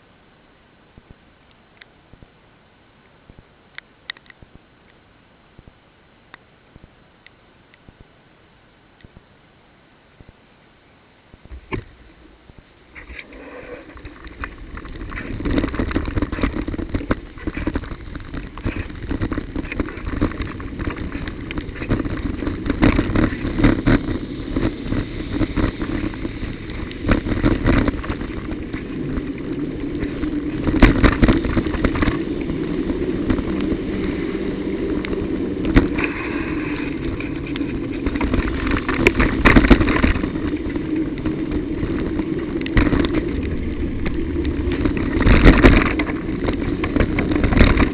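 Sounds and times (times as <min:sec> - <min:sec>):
bicycle tyres rumbling: 0:11.2 - 0:47.9
wind noise: 0:11.3 - 0:47.9
bike knocks and rattles: 0:14.0 - 0:47.9.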